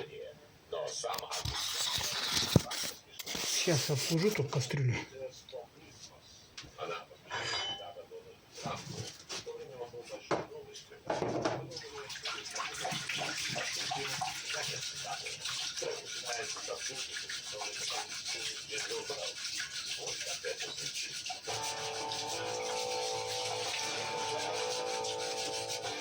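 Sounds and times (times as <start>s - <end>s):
scraping strokes on cooking pot: 12.4s - 26.0s.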